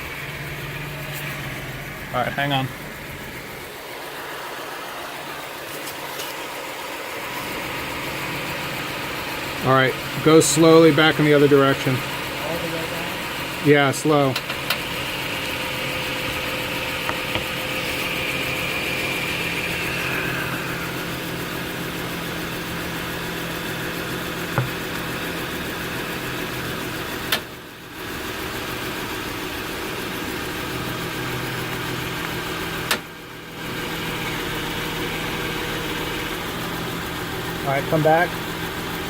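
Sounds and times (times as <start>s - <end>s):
car engine idling: 0.0s - 39.0s
high whine: 7.2s - 27.2s.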